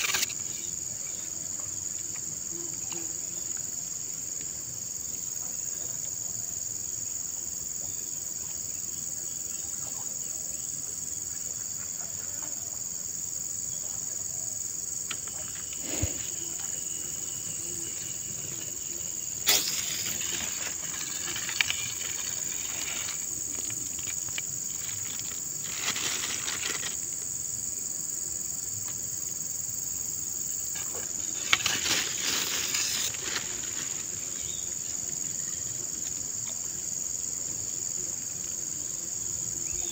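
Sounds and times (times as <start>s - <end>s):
high-pitched insect chorus: 0.0s - 39.9s.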